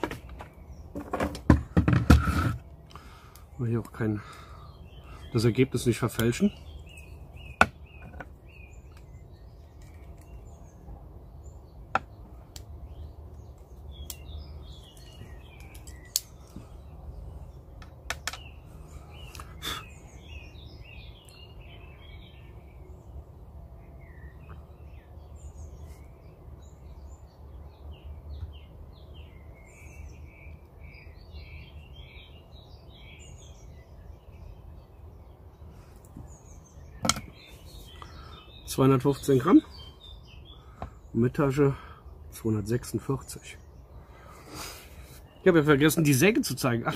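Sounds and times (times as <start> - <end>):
small birds chirping: 0.0 - 46.9
sharp clicks: 17.8 - 18.4.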